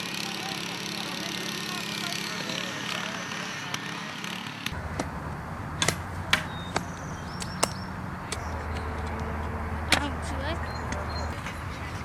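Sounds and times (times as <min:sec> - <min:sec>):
sharp knocks: 0:05.8 - 0:08.9.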